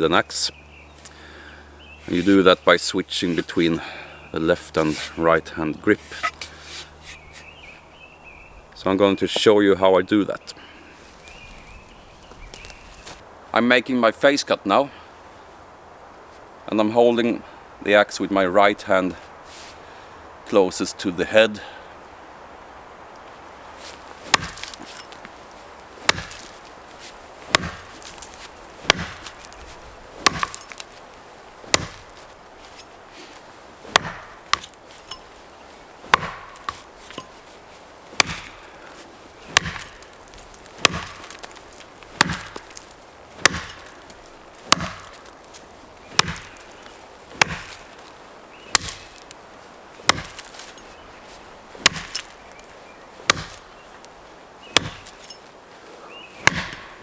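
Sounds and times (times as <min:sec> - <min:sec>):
axe chopping into tree trunk: 0:24.3 - 0:25.3, 0:26.0 - 0:26.6, 0:27.5 - 0:31.0, 0:31.6 - 0:32.9, 0:33.9 - 0:35.3, 0:36.1 - 0:37.4, 0:38.2 - 0:48.0, 0:48.6 - 0:49.4, 0:50.0 - 0:52.6, 0:53.2 - 0:53.7, 0:54.6 - 0:55.4, 0:56.4 - 0:57.0.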